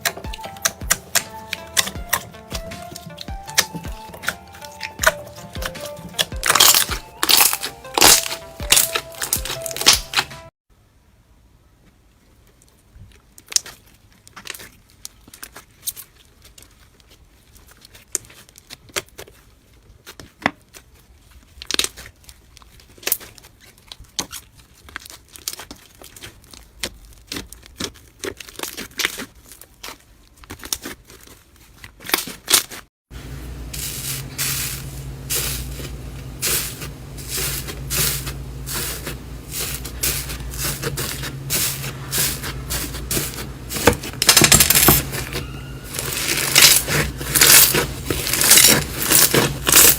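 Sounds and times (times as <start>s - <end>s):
slime squeezed with sticky pops: 0.0s - 10.4s, 36.4s - 49.9s
steady low hum: 33.1s - 49.9s.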